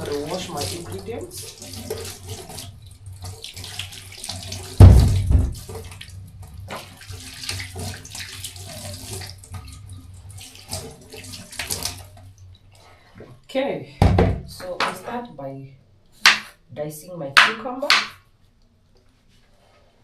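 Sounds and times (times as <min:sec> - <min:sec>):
tap water splashing: 0:00.0 - 0:13.4, 0:16.2 - 0:16.5, 0:17.4 - 0:18.2
loud low thump: 0:04.8 - 0:05.6.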